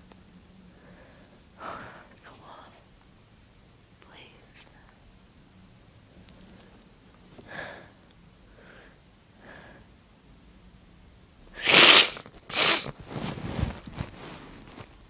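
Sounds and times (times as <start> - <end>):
catching breaths: 6.5 - 9.9
breathy sniffs: 11.6 - 13.0
person sneezing loudly: 11.6 - 13.0.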